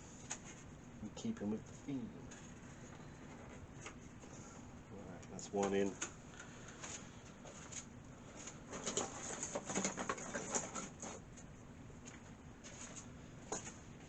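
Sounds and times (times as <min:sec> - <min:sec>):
cables clicking and rustling: 0:05.1 - 0:13.8.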